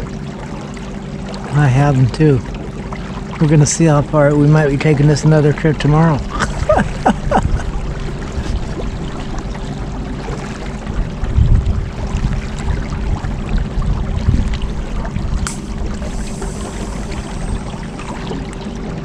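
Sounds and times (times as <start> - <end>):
water rushing along hull: 0.0 - 19.0
electric motor humming: 15.5 - 18.8.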